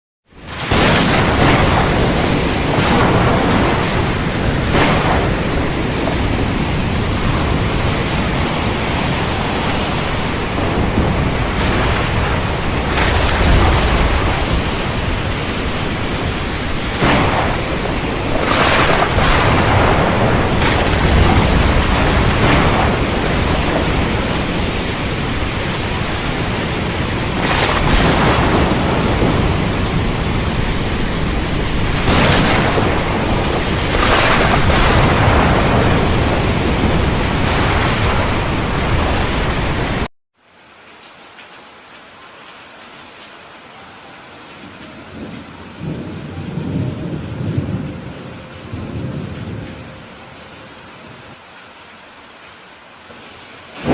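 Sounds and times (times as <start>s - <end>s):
heavy rain: 0.3s - 53.9s
rolling thunder: 0.4s - 40.1s, 45.0s - 50.3s
sharp thunder cracks: 0.4s - 40.1s.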